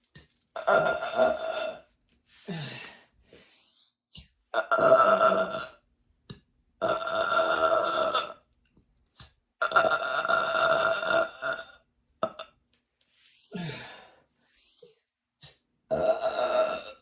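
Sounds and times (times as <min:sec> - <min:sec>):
woman burping: 0:00.6 - 0:01.8, 0:04.6 - 0:05.8, 0:09.6 - 0:12.5, 0:15.9 - 0:17.0.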